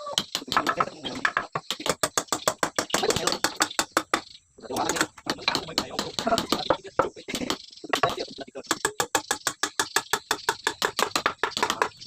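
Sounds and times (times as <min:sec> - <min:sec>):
indistinct voices: 0:00.0 - 0:02.0, 0:04.6 - 0:08.8
rapid sharp knocks: 0:00.2 - 0:12.0.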